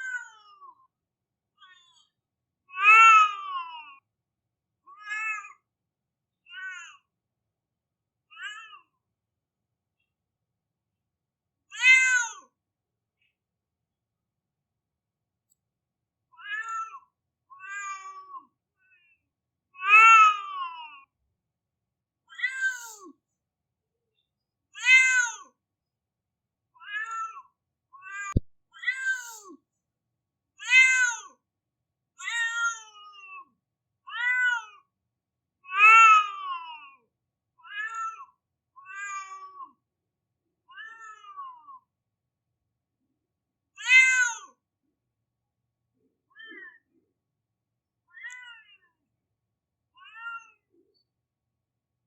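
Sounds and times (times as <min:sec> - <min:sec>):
cat meowing: 0:02.8 - 0:03.8, 0:05.0 - 0:05.5, 0:16.4 - 0:17.0, 0:19.8 - 0:20.9, 0:22.4 - 0:23.1, 0:28.0 - 0:29.5, 0:40.7 - 0:41.7, 0:48.1 - 0:48.9, 0:50.0 - 0:50.7.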